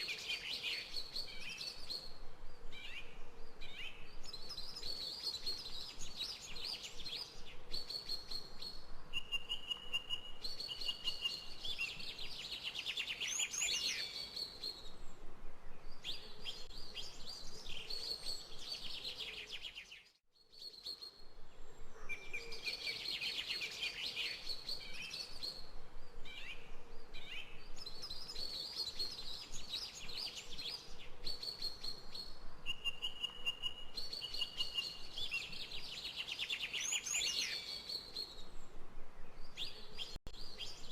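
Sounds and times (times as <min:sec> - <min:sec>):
faint background hiss: 0:00.0 - 0:40.9
birds chirping and singing: 0:21.8 - 0:38.6.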